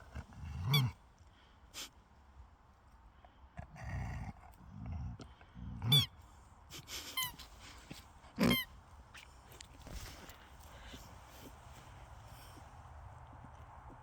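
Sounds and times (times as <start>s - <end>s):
squeaky toy squealing: 5.9s - 6.1s, 7.1s - 7.4s.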